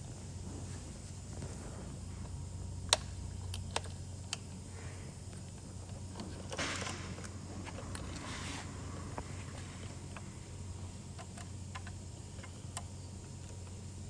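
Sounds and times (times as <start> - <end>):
soft rustle: 0.0 - 2.5, 7.0 - 10.5
low steady hum: 0.0 - 14.0.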